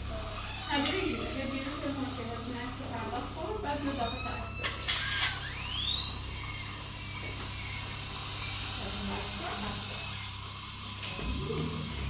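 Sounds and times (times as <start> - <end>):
high whistling tone: 5.4 - 12.0.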